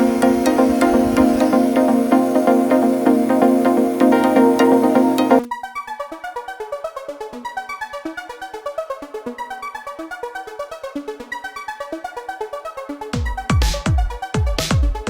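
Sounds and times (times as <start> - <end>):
quick synthesizer notes: 0.0 - 5.5.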